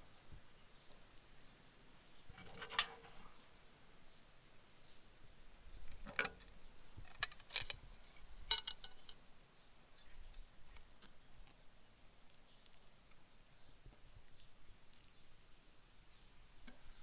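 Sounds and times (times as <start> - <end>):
cutlery clinking against dishes: 8.5 - 9.2.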